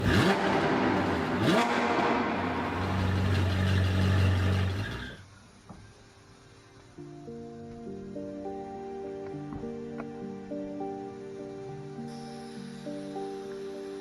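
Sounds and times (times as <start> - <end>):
car engine running: 0.0 - 5.2.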